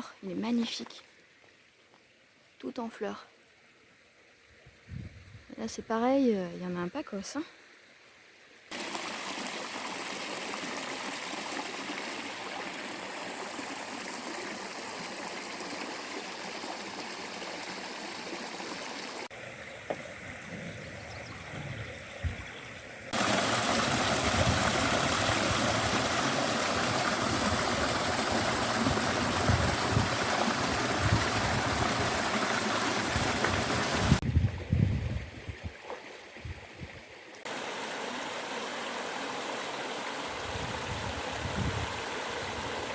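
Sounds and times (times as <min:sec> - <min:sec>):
stream water rushing: 0:08.7 - 0:20.5, 0:23.0 - 0:34.2, 0:36.0 - 0:42.9.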